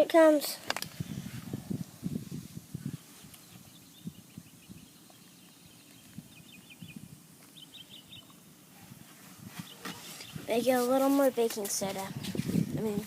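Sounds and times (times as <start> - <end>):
faint bird chirps: 3.1 - 8.4.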